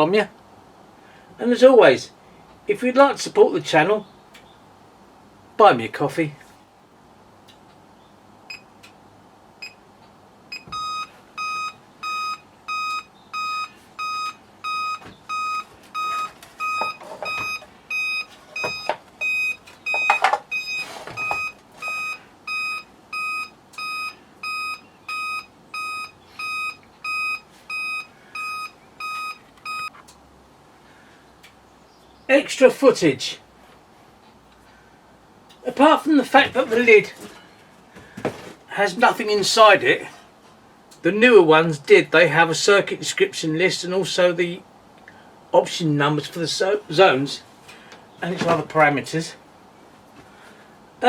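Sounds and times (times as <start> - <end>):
alarm panel buzzer beeping: 10.5 - 29.9
knocks and rustles: 15.0 - 17.7, 18.3 - 22.0, 36.4 - 38.7, 48.3 - 48.9.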